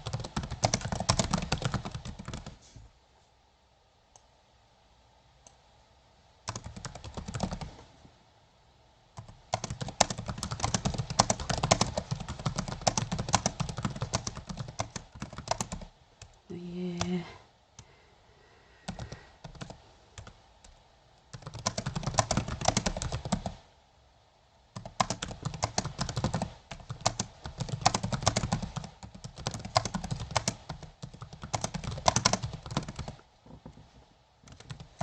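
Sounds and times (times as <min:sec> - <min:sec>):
computer keyboard typing: 0:00.0 - 0:02.6, 0:06.5 - 0:07.8, 0:09.2 - 0:16.4, 0:18.9 - 0:23.6, 0:24.8 - 0:33.2, 0:34.4 - 0:35.0.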